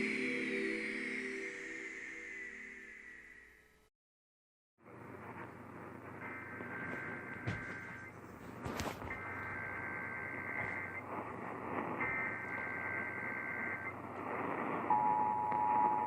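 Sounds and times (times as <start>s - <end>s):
radio static hiss: 4.8s - 16.0s
buzzy two-tone digital data bursts: 9.1s - 16.0s.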